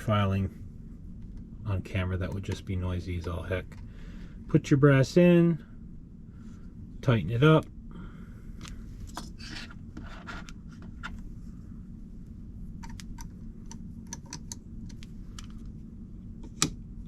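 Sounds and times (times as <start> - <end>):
soft rubbing and scraping: 8.8 - 11.7.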